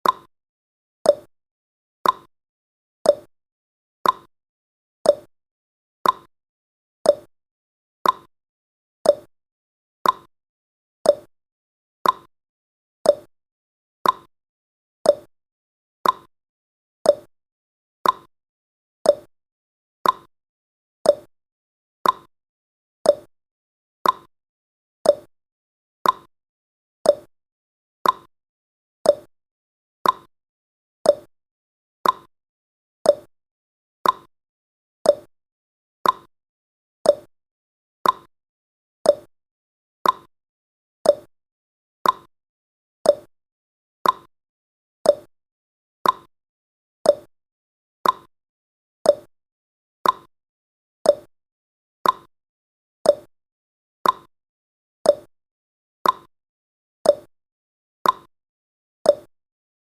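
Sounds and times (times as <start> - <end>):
clock ticking: 38.0 - 38.3, 44.0 - 44.3, 48.0 - 48.3.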